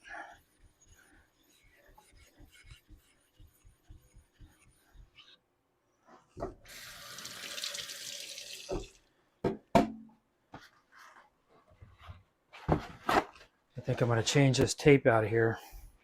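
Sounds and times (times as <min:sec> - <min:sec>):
water tap running: 0:06.7 - 0:09.0.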